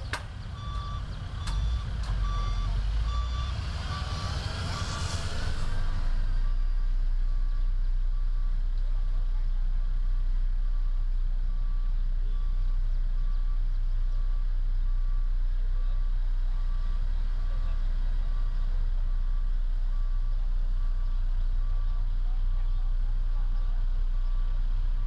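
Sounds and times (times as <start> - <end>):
diesel engine rumble: 0.0 - 25.0
reversing alarm beeping: 0.5 - 6.7.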